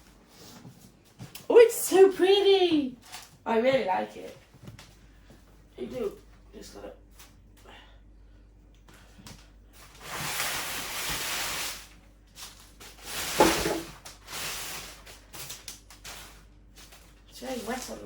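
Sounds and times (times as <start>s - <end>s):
plastic wrap rustling and tearing: 3.0s - 3.4s, 9.8s - 18.0s.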